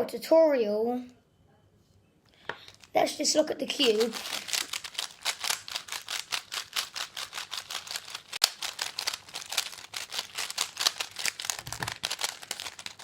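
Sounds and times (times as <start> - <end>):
speed cube plastic clicks: 3.9 - 13.0.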